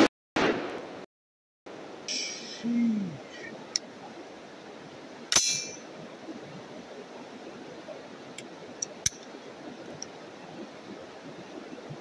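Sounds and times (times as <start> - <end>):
rifle shot: 0.0 - 0.9
steady outdoor hiss: 1.7 - 12.0.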